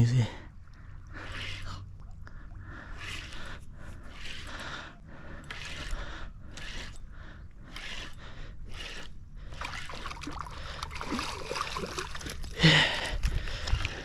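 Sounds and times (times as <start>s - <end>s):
water splashing: 9.6s - 14.0s.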